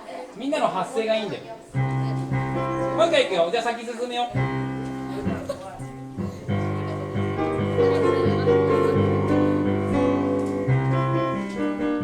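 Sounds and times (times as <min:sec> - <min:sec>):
piano playing sustained chords: 0:04.4 - 0:12.0.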